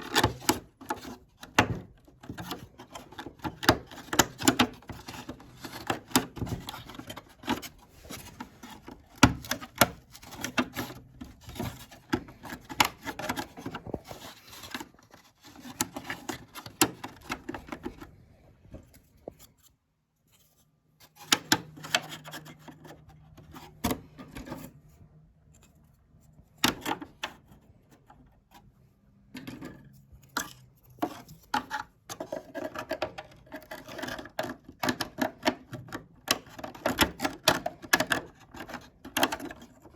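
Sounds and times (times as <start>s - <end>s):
tools clicking and scraping: 29.3s - 39.9s.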